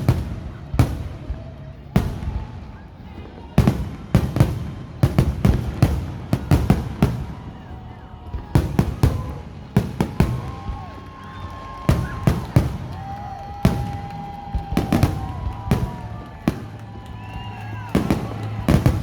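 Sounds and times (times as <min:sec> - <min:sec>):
firework whistling tones: 0:00.0 - 0:19.0
fireworks bangs: 0:00.0 - 0:19.0.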